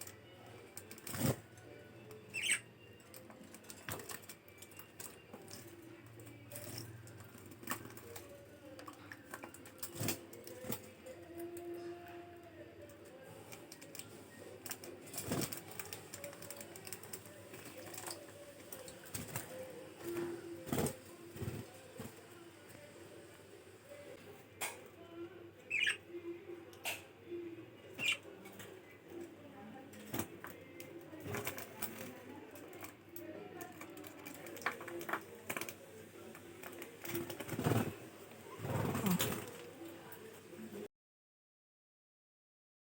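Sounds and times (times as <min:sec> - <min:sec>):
budgies chattering softly: 0:02.2 - 0:03.0, 0:25.7 - 0:26.0, 0:27.9 - 0:28.3.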